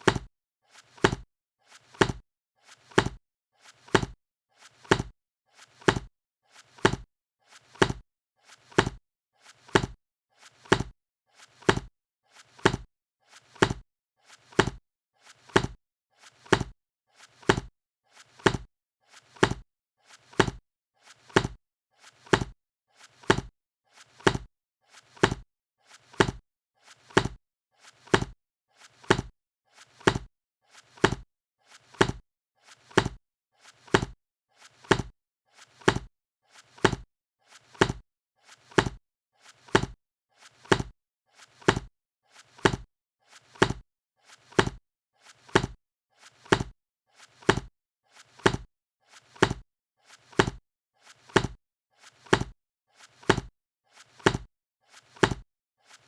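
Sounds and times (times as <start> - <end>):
book slapping shut: 42.6 - 42.8, 48.4 - 48.6.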